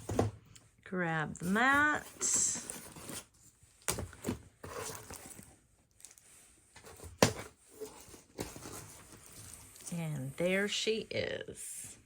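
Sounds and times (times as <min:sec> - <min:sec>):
cardboard scraping rustle: 0:01.4 - 0:09.8.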